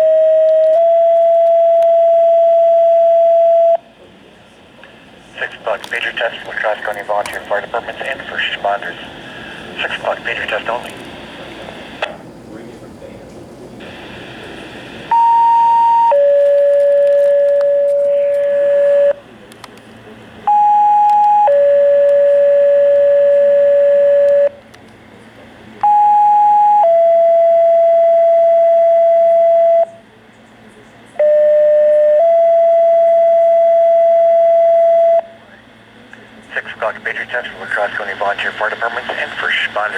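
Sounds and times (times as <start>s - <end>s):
radio hiss: 4.0s - 13.2s, 13.8s - 15.1s, 17.9s - 19.0s, 35.4s - 39.9s.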